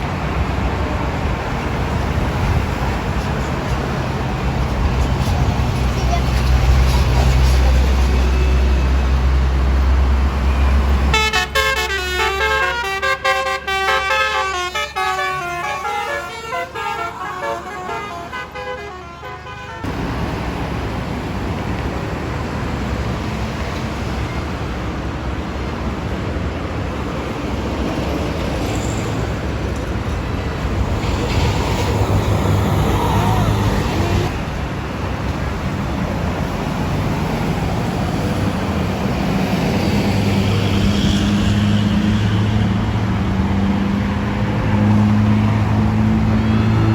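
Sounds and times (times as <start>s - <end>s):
bus engine rumble: 0.0s - 46.9s
road traffic: 0.0s - 46.9s
musical air horn tune: 11.1s - 19.9s.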